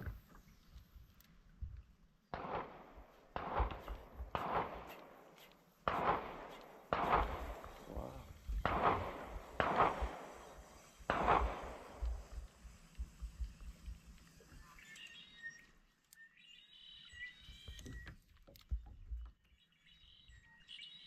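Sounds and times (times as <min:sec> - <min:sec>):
distant gunshots echoing: 0:02.3 - 0:12.5.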